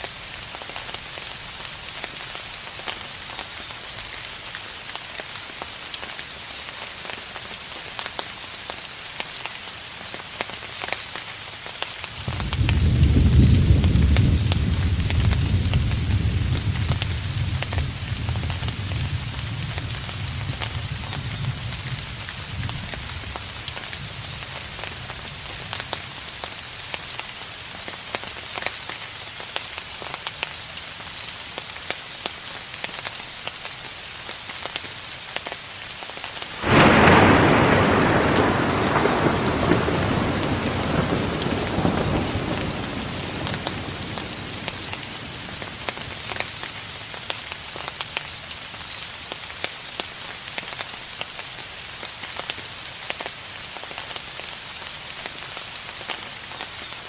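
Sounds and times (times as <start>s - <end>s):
steady rain falling: 0.0s - 57.0s
thunder clap and rumble: 12.2s - 23.4s, 36.6s - 46.7s
rain drop ticks: 36.2s - 51.3s.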